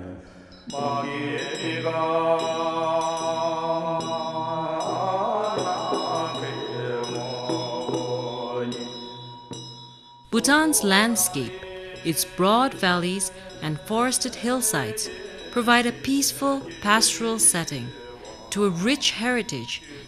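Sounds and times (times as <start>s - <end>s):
deep droning chant: 0.0s - 8.9s.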